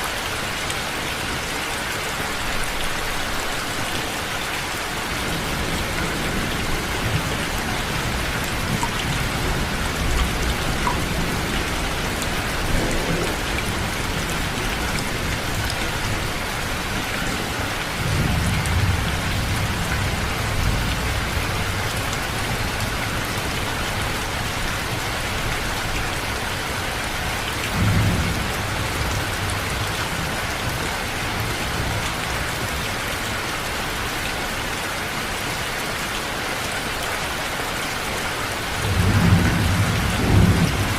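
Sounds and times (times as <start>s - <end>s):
steady rainfall: 0.0s - 40.9s
low rolls of thunder: 5.3s - 15.6s, 38.8s - 40.9s.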